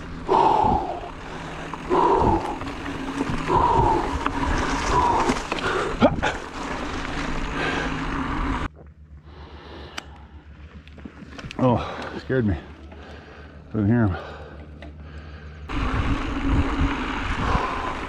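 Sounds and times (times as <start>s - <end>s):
wind and trail noise: 0.0s - 18.0s
heavy gasping breathing: 0.2s - 6.5s, 11.6s - 15.7s.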